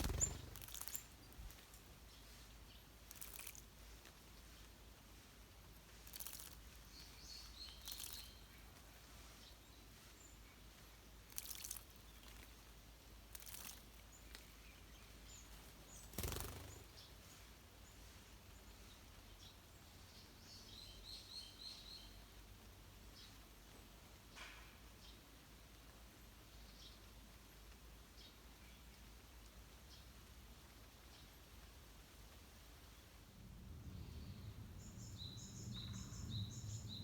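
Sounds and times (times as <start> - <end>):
small birds chirping: 0.0 - 24.4, 32.8 - 37.0.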